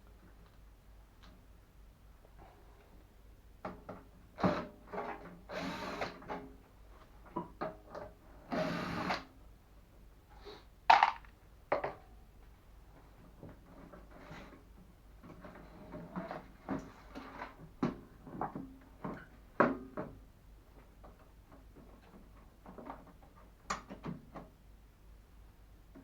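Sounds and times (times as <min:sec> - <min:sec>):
clicks and knocks of handling parts: 0:10.9 - 0:12.1.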